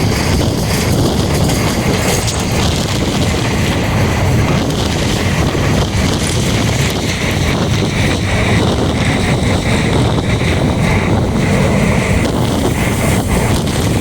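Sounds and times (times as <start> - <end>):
rattling and clatter: 0.0 - 14.0
vehicle rumbling: 0.0 - 14.0.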